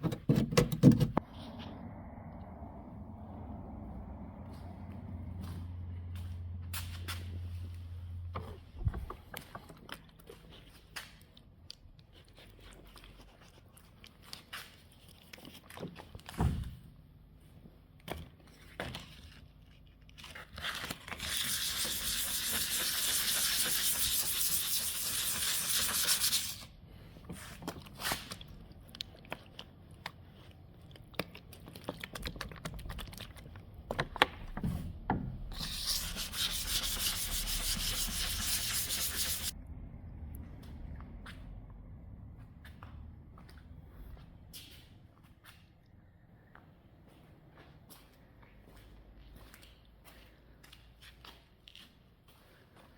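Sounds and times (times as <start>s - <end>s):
scrapes and taps on car panels: 0.0s - 1.2s
sanding hiss: 21.5s - 26.6s, 35.6s - 39.5s.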